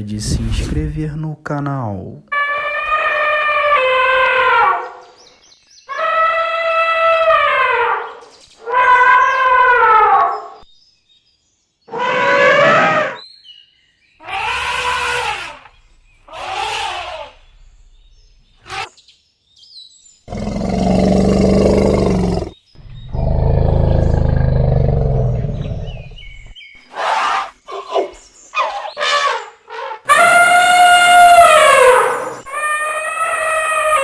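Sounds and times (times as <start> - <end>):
elephant low roaring calls: 11.9 - 13.2, 14.2 - 15.7, 16.3 - 18.1, 20.3 - 26.5, 30.1 - 32.4
elephants trumpeting: 11.9 - 13.2, 14.2 - 15.7, 16.3 - 17.7, 28.6 - 34.0.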